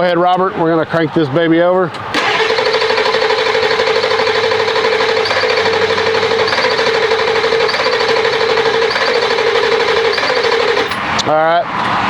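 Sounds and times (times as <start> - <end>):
diesel engine cranking on starter: 1.9 - 12.0.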